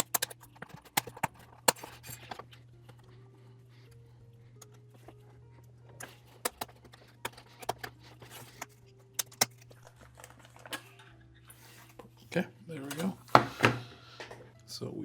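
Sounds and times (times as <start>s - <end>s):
plastic parts clicking into place: 0.0s - 3.1s, 6.0s - 11.2s
steady low hum: 0.0s - 14.6s
faint background music: 0.0s - 15.0s.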